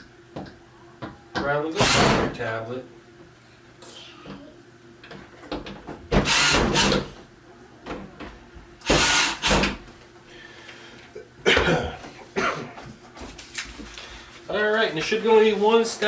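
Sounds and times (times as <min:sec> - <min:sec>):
cordless drill driving screws: 0:01.8 - 0:02.2, 0:06.2 - 0:07.1, 0:08.9 - 0:09.7.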